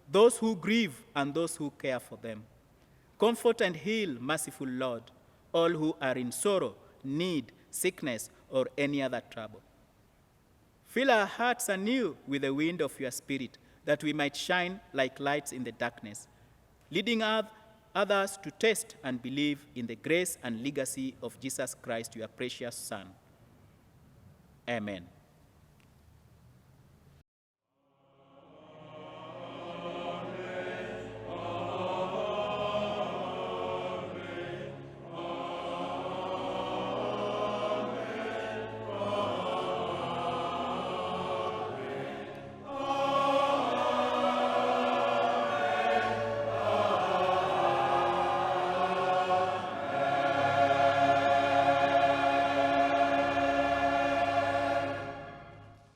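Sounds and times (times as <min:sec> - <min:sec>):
choir singing: 0:27.9 - 0:55.9.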